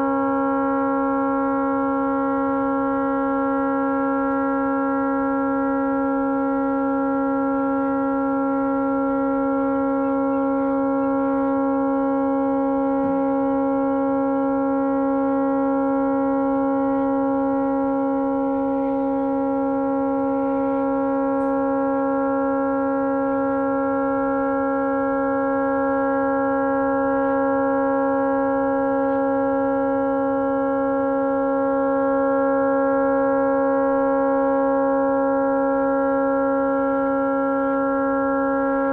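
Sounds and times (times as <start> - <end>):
tugboat horn blast: 31.8 - 38.9.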